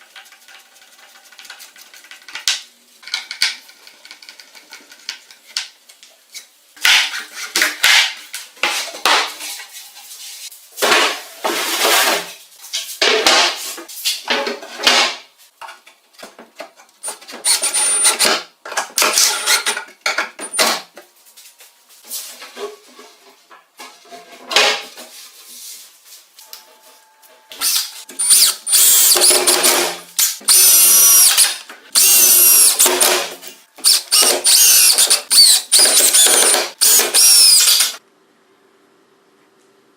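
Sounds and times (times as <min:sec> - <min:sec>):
hand tools scraping and clattering: 0:06.2 - 0:20.7, 0:26.5 - 0:38.0.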